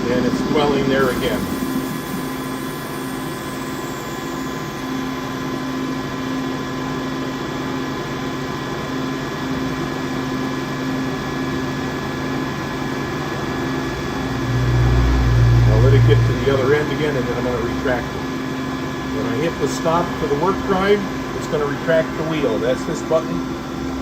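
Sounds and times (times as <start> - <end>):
grinder humming: 0.5 - 6.2.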